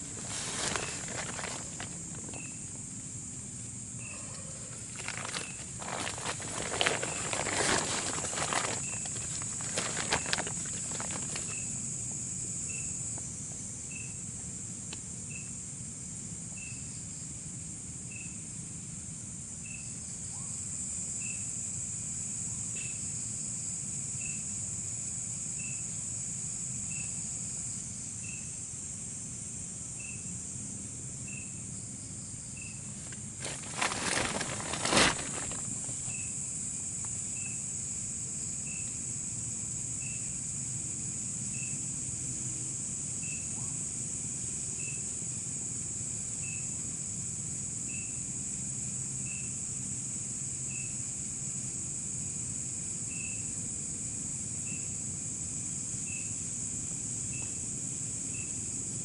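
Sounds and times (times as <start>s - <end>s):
short high insect call: 0.0s - 14.4s, 26.8s - 43.9s, 46.2s - 48.4s, 52.6s - 53.7s, 54.4s - 59.0s
insect chorus buzzing: 0.0s - 59.0s
knocks or rustles: 0.1s - 2.5s, 4.8s - 11.6s, 33.1s - 36.2s.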